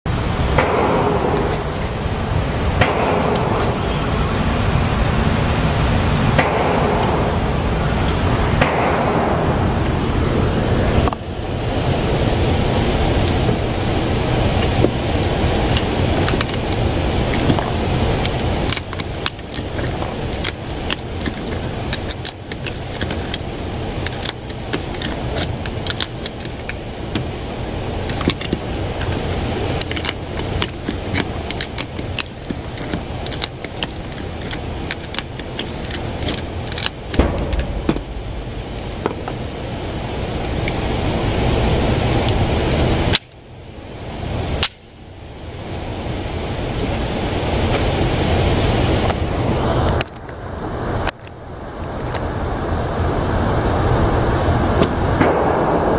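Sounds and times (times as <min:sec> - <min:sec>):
steady rumbling noise: 0:00.1 - 0:55.9
sharp loud knock: 0:37.2 - 0:38.3.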